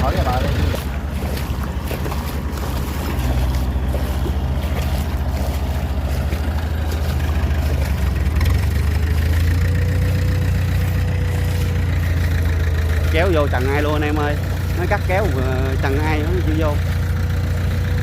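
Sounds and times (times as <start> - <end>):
diesel engine running under load: 0.0 - 18.0.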